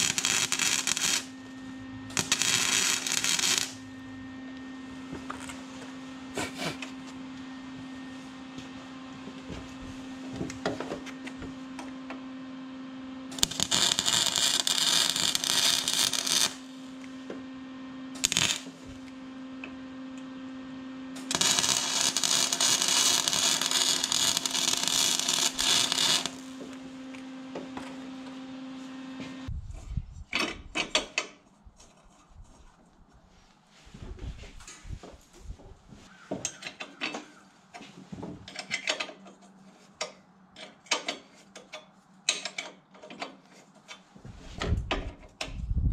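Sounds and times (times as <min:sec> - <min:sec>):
power tool bursts: 0:00.0 - 0:01.4, 0:02.1 - 0:04.0, 0:13.3 - 0:16.8, 0:18.2 - 0:18.8, 0:21.2 - 0:26.8
steady machine hum: 0:00.0 - 0:30.1.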